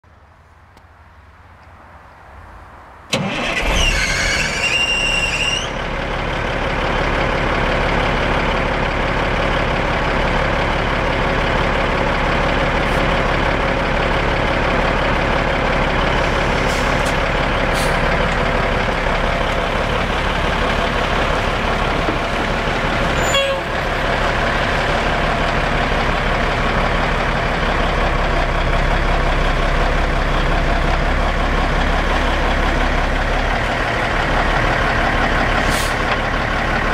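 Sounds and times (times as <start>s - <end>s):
diesel truck engine starting: 3.1s - 36.9s
high squealing whine: 3.4s - 6.0s.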